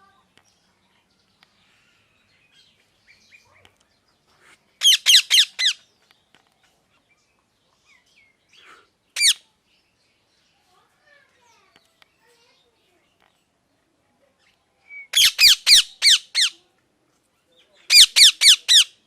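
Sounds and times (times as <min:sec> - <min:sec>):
soft bird chirps: 0:00.0 - 0:19.0
parrot screeching: 0:04.8 - 0:05.8, 0:09.2 - 0:09.4, 0:15.1 - 0:16.6, 0:17.9 - 0:18.9.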